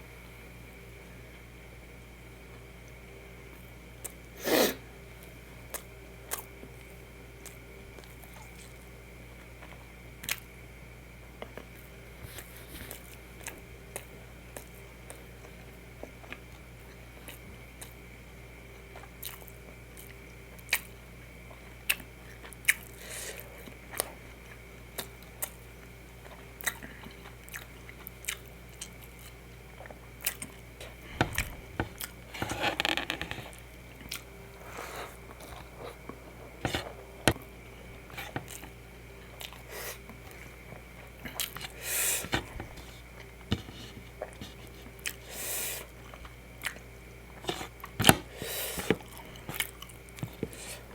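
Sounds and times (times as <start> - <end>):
faint steady hum: 0.0 - 50.9
close-miked chewing and biting: 18.9 - 20.9, 26.2 - 32.6, 33.3 - 45.2, 47.4 - 50.9
food crunching: 18.9 - 45.3, 45.9 - 50.9.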